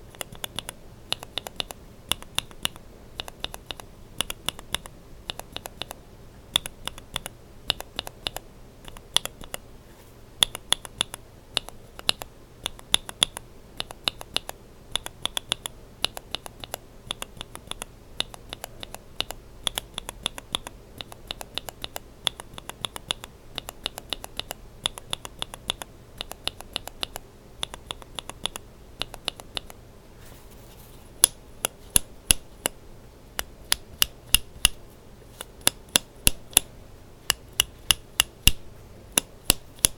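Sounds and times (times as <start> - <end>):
keyboard switches clacking: 31.2 - 32.8, 33.4 - 34.8, 35.4 - 36.7, 37.3 - 39.9.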